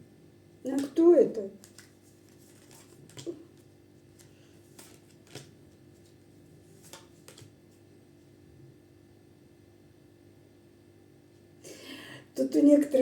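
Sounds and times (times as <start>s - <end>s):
faint steady hum: 0.0s - 13.0s
cards clicking on table: 0.7s - 1.0s, 4.2s - 5.6s, 6.8s - 7.5s.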